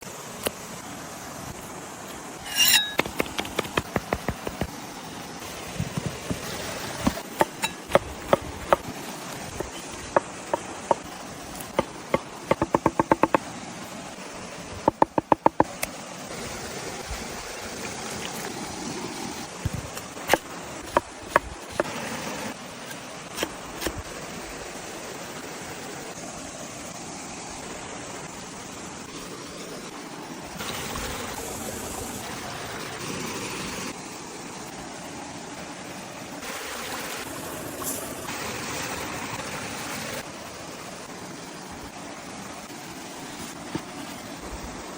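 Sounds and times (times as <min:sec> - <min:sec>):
steady background noise: 0:00.0 - 0:44.9
rapid chopping strokes: 0:02.5 - 0:04.8, 0:05.6 - 0:13.5, 0:14.7 - 0:15.9, 0:19.6 - 0:22.0
knife knocks and taps: 0:11.8 - 0:13.4, 0:14.8 - 0:15.7.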